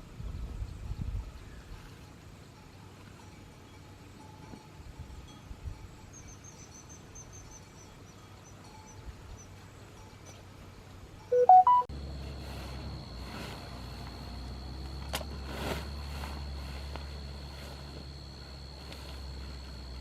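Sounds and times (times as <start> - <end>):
faint high chirps: 11.3 - 11.9
rising electronic beeps: 11.3 - 11.9
low hum: 11.3 - 20.0
steady high whine: 11.3 - 20.0.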